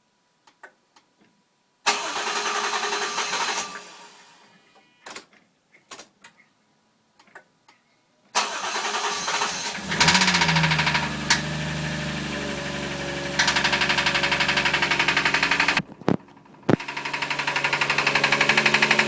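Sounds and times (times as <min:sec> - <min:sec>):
engine starter cranking: 0:01.9 - 0:04.1, 0:08.4 - 0:19.0
engine idling with rapid tapping: 0:09.8 - 0:19.0.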